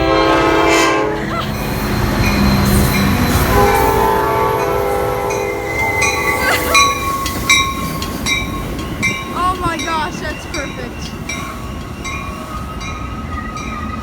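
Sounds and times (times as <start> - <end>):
train air horn chord: 0.0 - 1.2, 3.5 - 6.0
low rumble of train: 0.0 - 14.0.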